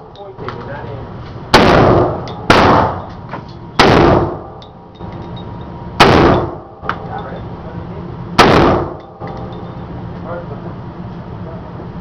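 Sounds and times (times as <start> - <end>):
rifle shots with echo: 1.5 - 3.1, 3.8 - 4.6, 6.0 - 6.7, 8.4 - 9.0.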